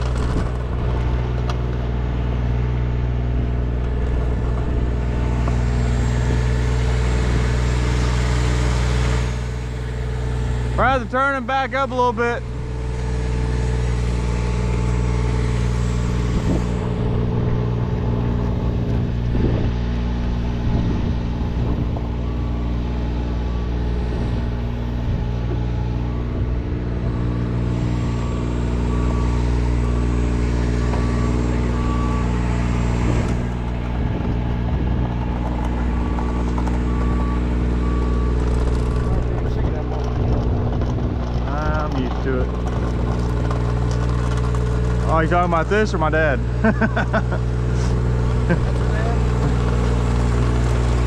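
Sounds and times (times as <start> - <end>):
truck engine running: 0.0 - 51.0
back-up alarm beeping: 20.0 - 40.4.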